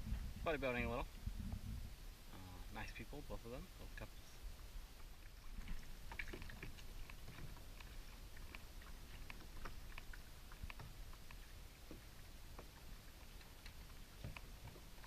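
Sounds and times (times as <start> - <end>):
low rumble: 0.0 - 4.6
faint clicking and ticking: 5.0 - 15.0.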